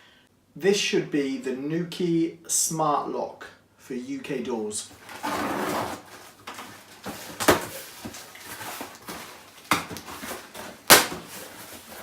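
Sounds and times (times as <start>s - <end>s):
cardboard box rustling: 5.0s - 12.0s
sharp knocks on cardboard box: 9.7s - 11.4s.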